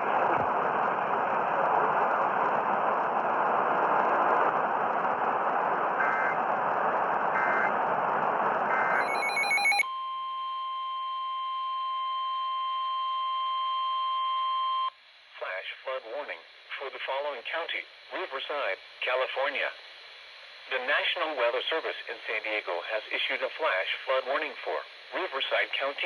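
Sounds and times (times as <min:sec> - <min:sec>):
radio static hiss: 0:00.0 - 0:09.8, 0:15.0 - 0:26.0
steady alarm tone: 0:08.7 - 0:09.8
two-pitch data bursts: 0:08.7 - 0:09.8.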